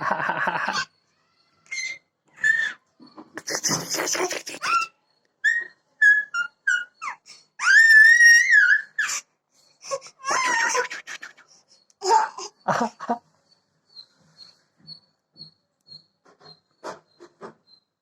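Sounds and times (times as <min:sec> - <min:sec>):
baby squealing: 0:01.7 - 0:02.8, 0:03.4 - 0:09.2, 0:09.9 - 0:11.4
low rough baby vocal sounds: 0:03.4 - 0:04.8.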